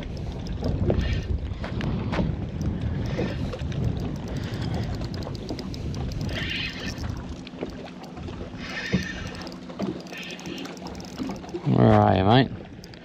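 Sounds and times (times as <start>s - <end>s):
wind buffeting microphone: 0.0s - 10.0s
water lapping around boat: 0.0s - 13.0s
sharp tick: 2.6s - 8.2s, 12.8s - 13.0s.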